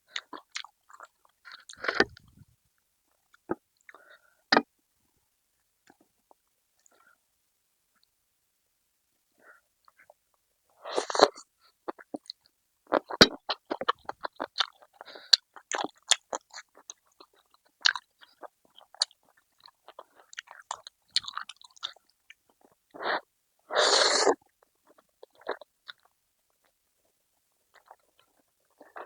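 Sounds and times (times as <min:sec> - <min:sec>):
person chewing and crunching food: 0:00.1 - 0:02.4, 0:10.9 - 0:23.0, 0:24.5 - 0:29.0.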